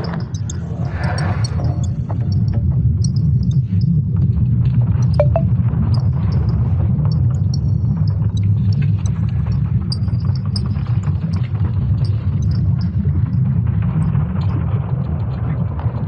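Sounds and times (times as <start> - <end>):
brief chirps: 5.2 - 5.5.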